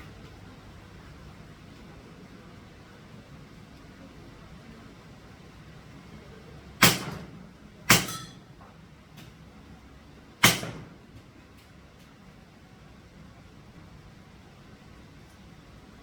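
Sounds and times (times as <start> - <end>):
airsoft rifle shots: 6.8 - 8.4, 10.4 - 11.0.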